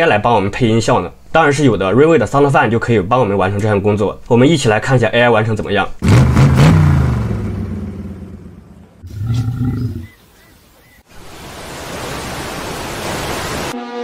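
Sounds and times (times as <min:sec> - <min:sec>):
low growl-like sound: 0:09.0 - 0:10.1.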